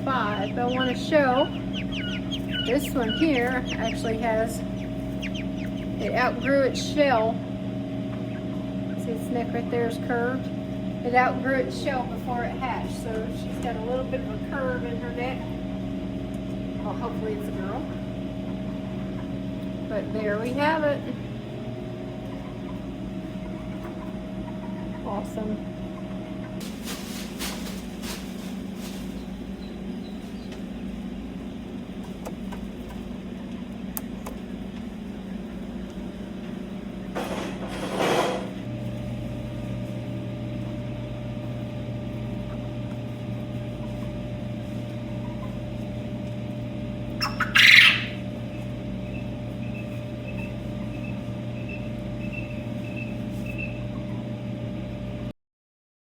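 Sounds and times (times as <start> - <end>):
faint peeps: 0.0 - 6.8, 47.2 - 54.2
quail calling: 0.0 - 7.3, 8.0 - 9.9, 22.2 - 25.2, 45.0 - 45.7, 47.1 - 54.3
machine hum: 0.0 - 55.3.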